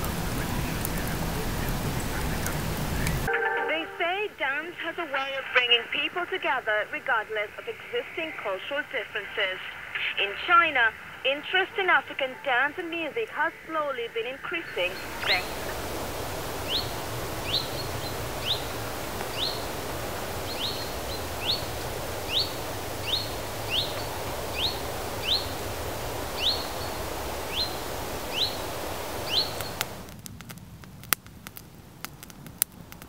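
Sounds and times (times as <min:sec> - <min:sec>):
steady hiss: 0:00.0 - 0:33.0
small bird chirping: 0:16.6 - 0:19.7, 0:20.4 - 0:25.6, 0:26.3 - 0:29.9.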